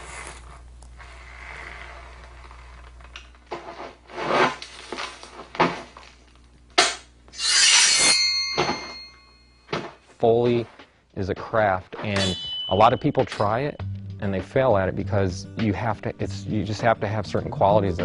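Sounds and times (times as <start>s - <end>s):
rough rasping strokes: 7.4s - 8.6s.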